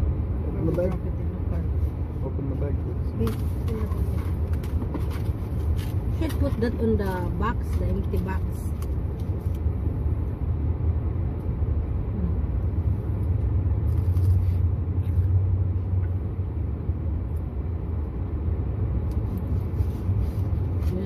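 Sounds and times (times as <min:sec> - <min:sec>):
truck rumble from inside cabin: 0:00.0 - 0:21.0.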